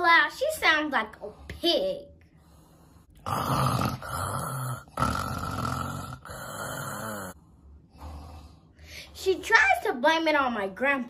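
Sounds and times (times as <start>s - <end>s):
child imitating snoring: 3.2s - 7.4s.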